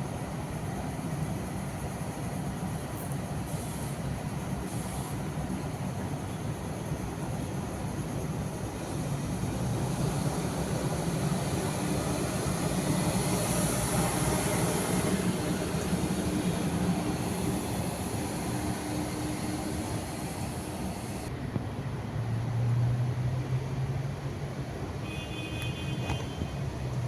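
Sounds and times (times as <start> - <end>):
distant engine drone: 6.4 - 21.3.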